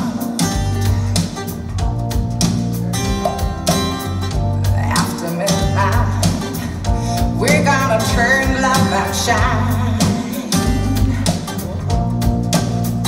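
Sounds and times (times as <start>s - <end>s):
song with singing and instruments: 0.0s - 13.0s
steady bass line: 0.0s - 13.0s.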